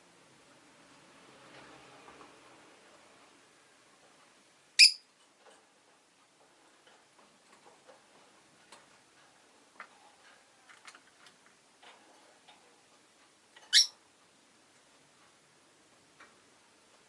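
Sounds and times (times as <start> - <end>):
lovebird chirp: 4.8 - 5.1, 13.7 - 14.0
soft clicks and ticks: 5.1 - 17.0.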